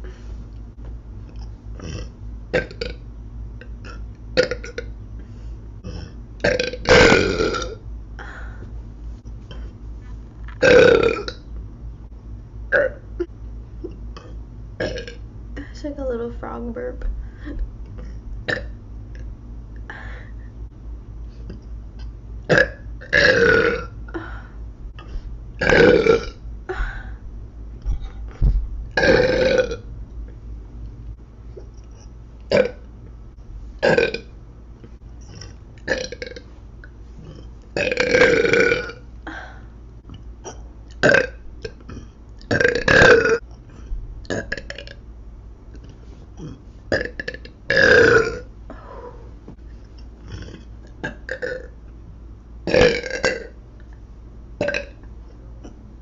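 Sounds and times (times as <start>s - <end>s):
woman burping: 5.8s - 8.4s, 10.6s - 11.4s, 14.2s - 15.2s, 18.5s - 18.7s, 22.5s - 24.4s, 25.6s - 27.1s, 29.0s - 29.8s, 33.8s - 34.3s, 35.3s - 36.4s, 37.2s - 39.5s, 40.4s - 43.4s, 46.4s - 49.3s, 50.3s - 51.7s, 52.7s - 53.6s, 54.6s - 55.0s.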